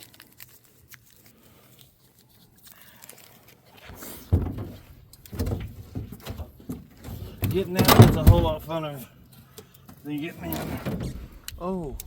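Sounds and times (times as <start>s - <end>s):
low thumps and knocks: 4.2s - 8.6s.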